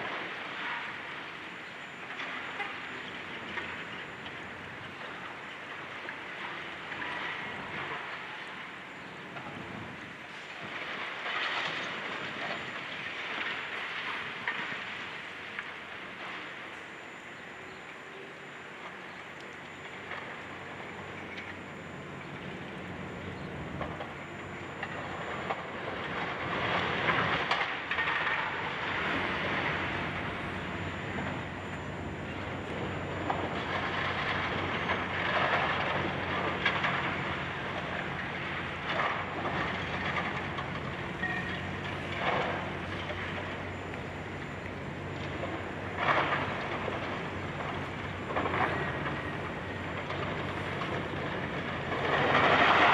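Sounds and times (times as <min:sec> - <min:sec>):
diesel engine running: 0:00.0 - 0:52.9
debris crunching and rattling: 0:45.2 - 0:52.9.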